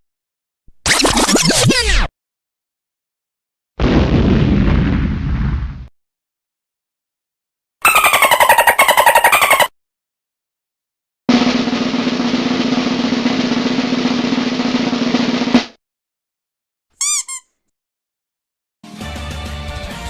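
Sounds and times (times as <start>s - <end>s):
music: 11.3s - 15.8s, 18.8s - 20.0s
snare drum roll: 11.3s - 15.8s.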